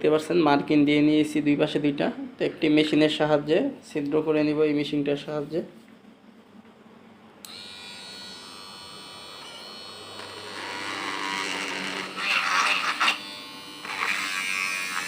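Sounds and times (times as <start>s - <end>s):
electric drill whining: 7.5s - 15.0s
drill boring into plastic pipe: 9.9s - 15.0s.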